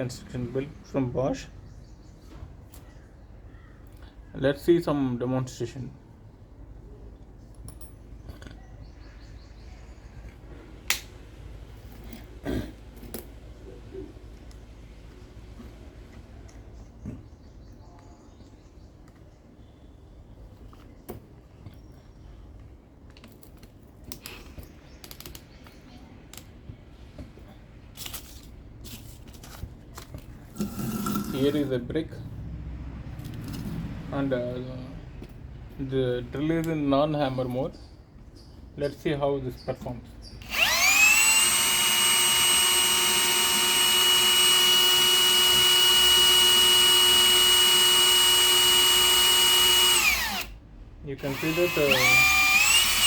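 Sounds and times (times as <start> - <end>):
objects being handled: 27.2 - 31.3
electric drill drilling into brick: 40.4 - 50.6, 51.2 - 53.0.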